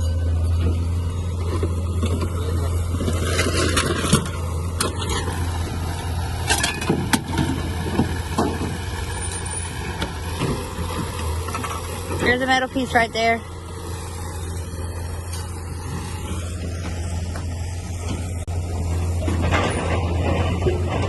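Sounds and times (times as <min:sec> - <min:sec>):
vehicle engine running: 0:00.0 - 0:21.0
sharp knocks and clanks: 0:06.4 - 0:08.9.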